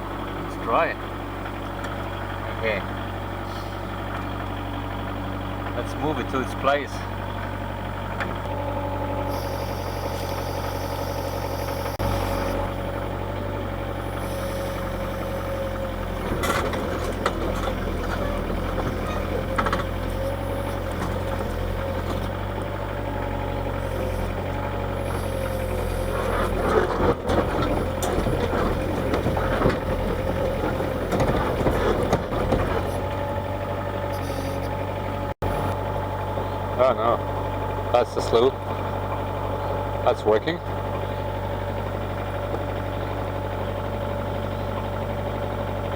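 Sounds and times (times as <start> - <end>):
diesel engine running: 0.0 - 45.9
machine clanks and rattles: 14.0 - 34.8.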